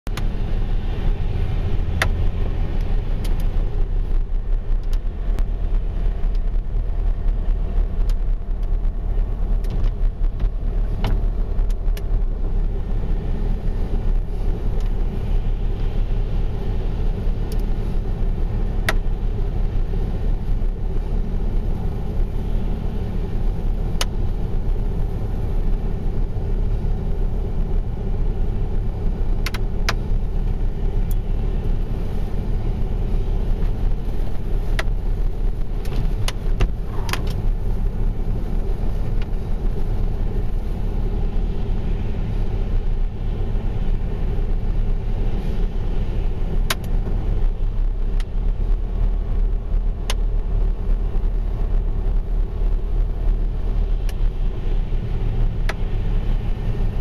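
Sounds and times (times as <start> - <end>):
motor vehicle rumbling: 0.0 - 57.0
faint sharp clicks: 2.0 - 2.2, 2.8 - 3.5, 4.8 - 5.5, 17.5 - 17.7, 29.4 - 30.0, 46.6 - 47.0, 50.0 - 50.3.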